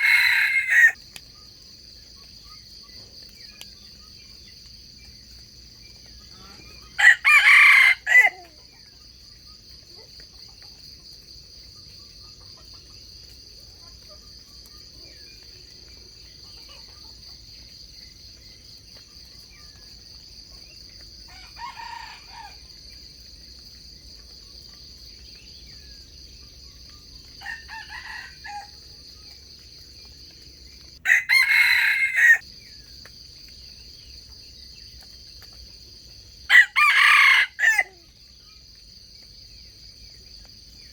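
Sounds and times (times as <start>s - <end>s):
roosters crowing: 0.0s - 1.0s, 6.5s - 8.5s, 21.3s - 22.7s, 27.4s - 28.8s, 31.0s - 32.4s, 36.5s - 38.0s
insects droning: 0.0s - 40.9s.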